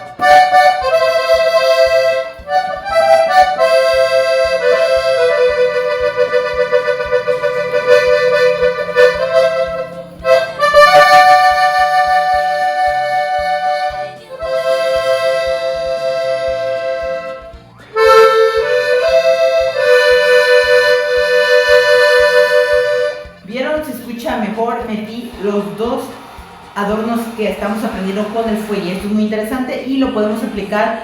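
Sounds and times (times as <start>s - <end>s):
accordion slow melody: 0.0s - 30.7s.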